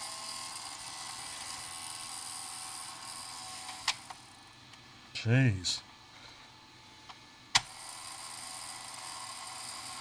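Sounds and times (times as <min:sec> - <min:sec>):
floppy disk drive whirring: 0:00.0 - 0:04.4, 0:07.1 - 0:10.0.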